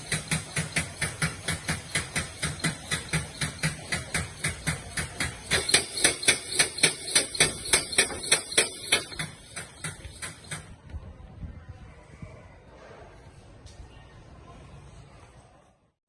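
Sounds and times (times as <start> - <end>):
diaphragm pump air valve clacking: 0.0 - 10.7.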